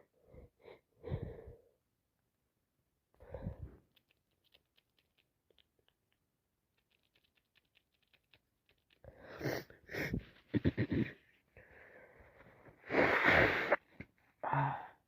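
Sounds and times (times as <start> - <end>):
sharp gasping breaths: 3.2 - 3.8, 9.0 - 10.5
faint crackling clicks: 3.8 - 9.1
person sniffing: 9.1 - 10.7, 12.8 - 13.8.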